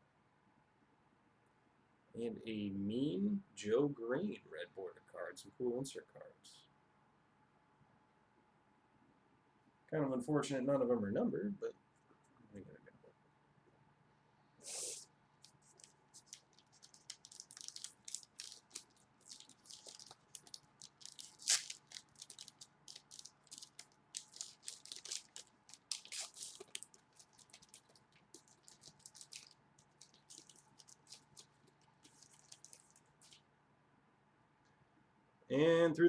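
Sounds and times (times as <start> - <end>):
wrapper crinkling: 15.4 - 33.4
cards being shuffled: 15.5 - 33.4.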